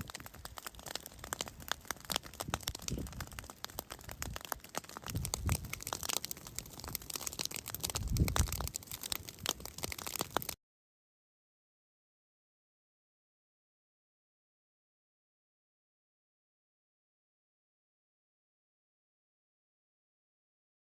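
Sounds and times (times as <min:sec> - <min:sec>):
low fire rumble: 0:00.0 - 0:10.6
vegetation crackling and popping: 0:00.0 - 0:10.6.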